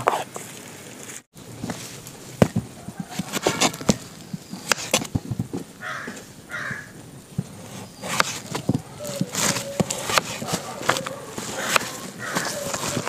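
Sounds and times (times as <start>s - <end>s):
crow cawing: 5.8s - 7.0s, 9.0s - 13.0s
knife chopping on cutting board: 8.0s - 13.0s.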